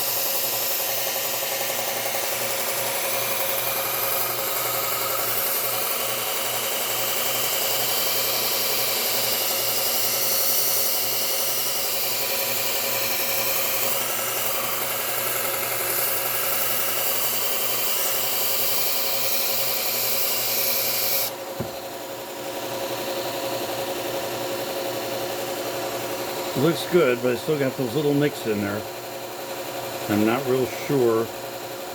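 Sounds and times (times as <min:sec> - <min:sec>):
metal blade grinding on belt sander: 0:00.0 - 0:21.4
sander motor running: 0:00.0 - 0:28.6.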